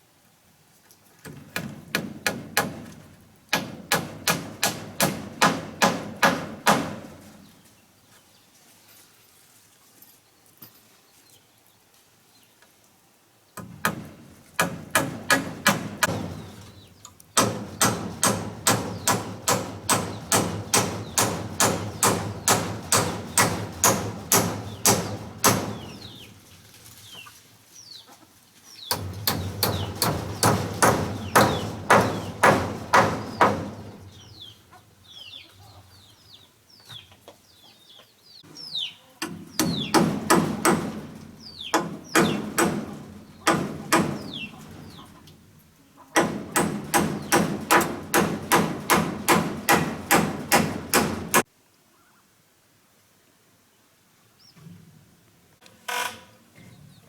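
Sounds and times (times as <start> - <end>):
hand tool strikes: 28.9 - 33.9.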